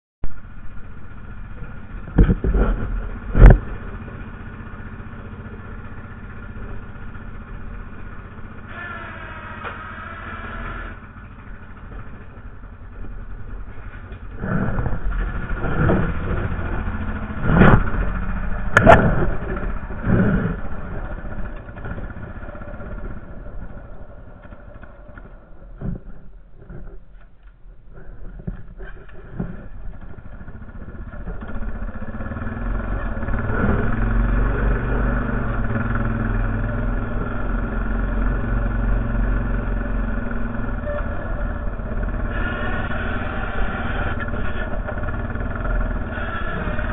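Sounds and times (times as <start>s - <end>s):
atv engine running: 0.2s - 46.9s
knocks and thumps: 2.1s - 3.9s, 17.4s - 20.7s.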